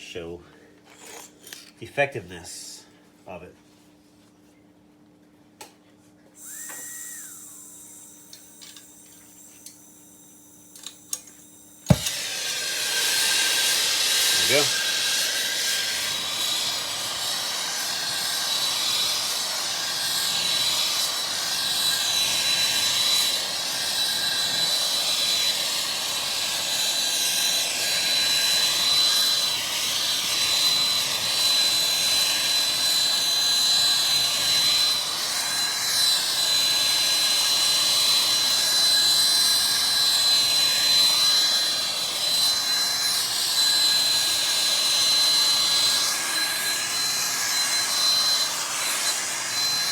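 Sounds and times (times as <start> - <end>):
high whistle: 6.4 - 8.4, 45.2 - 49.9
gas torch flame hissing: 6.4 - 23.6.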